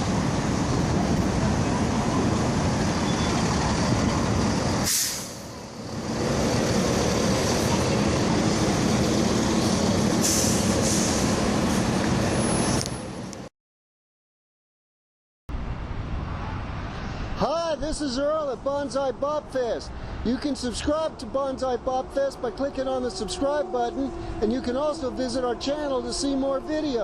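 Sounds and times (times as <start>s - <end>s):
bus engines running: 0.0s - 13.5s, 15.6s - 27.0s
air brake hiss: 4.8s - 5.5s, 10.2s - 11.4s.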